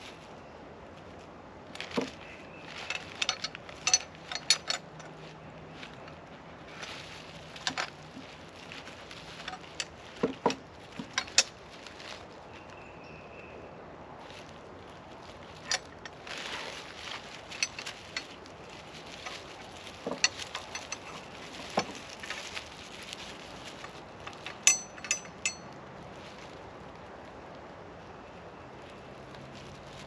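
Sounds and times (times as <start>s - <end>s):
packaging rustling: 1.1s - 12.8s, 14.2s - 25.4s
ringing metallic clinks: 2.8s - 5.2s, 24.3s - 25.8s.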